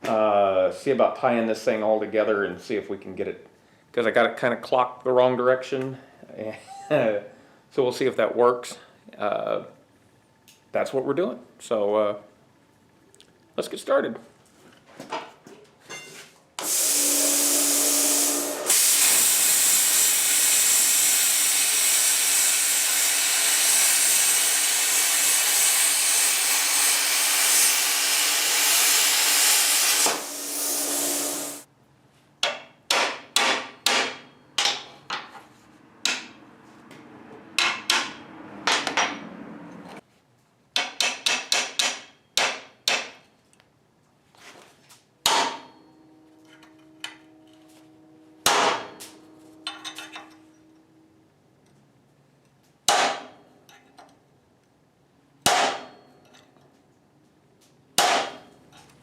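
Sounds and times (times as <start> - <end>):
loud steady hissing tool: 16.6 - 31.7.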